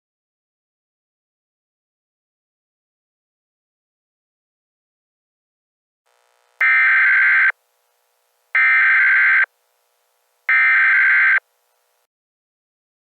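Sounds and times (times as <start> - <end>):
harsh buzzing digital alert tones: 6.6 - 7.6, 8.6 - 9.5, 10.5 - 11.4.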